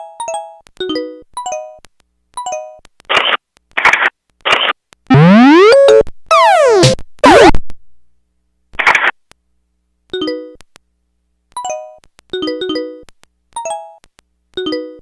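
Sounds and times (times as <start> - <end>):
sweeping synth tones: 5.1 - 7.6.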